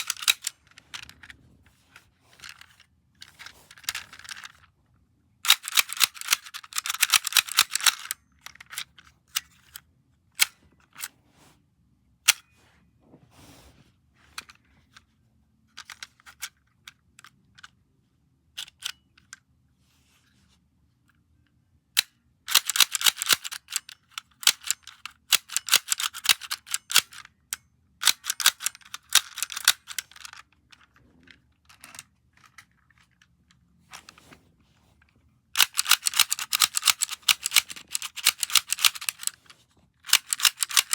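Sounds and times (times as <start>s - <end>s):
sharp mechanical clicks: 0.0s - 0.6s, 5.4s - 8.9s, 22.5s - 27.3s, 35.6s - 39.4s, 40.1s - 40.9s.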